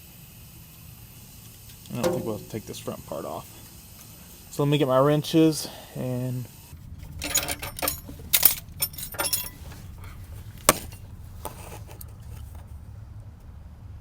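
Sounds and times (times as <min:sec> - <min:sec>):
metal wrenches clinking: 0:02.0 - 0:02.9, 0:06.9 - 0:12.6.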